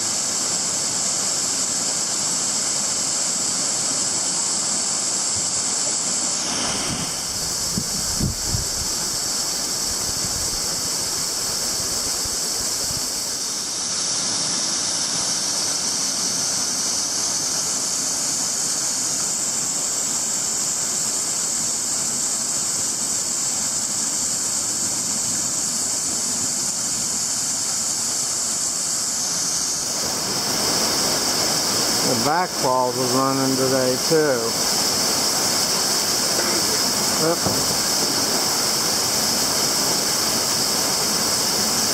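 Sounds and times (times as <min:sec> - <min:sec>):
waterfall rushing: 0:05.6 - 0:17.4, 0:27.3 - 0:41.9.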